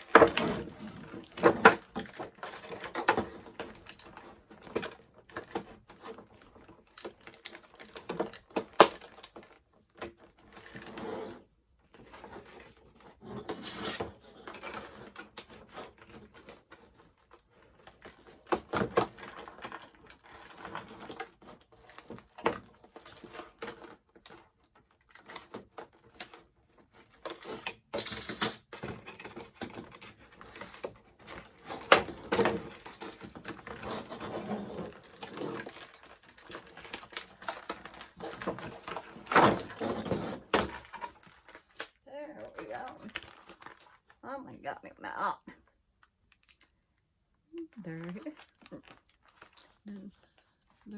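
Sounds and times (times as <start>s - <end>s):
plastic packaging crinkling: 29.0s - 44.2s, 46.0s - 46.8s, 47.6s - 50.9s.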